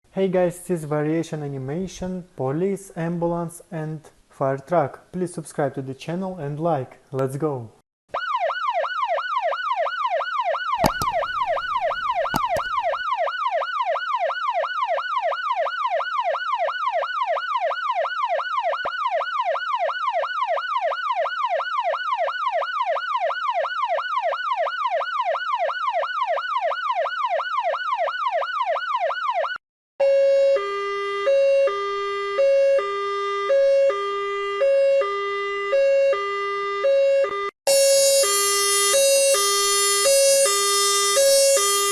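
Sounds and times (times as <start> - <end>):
sharp clicks: 10.8 - 13.0
two-tone hi-lo siren: 10.8 - 13.0, 13.6 - 41.9
yelping siren: 37.7 - 41.9.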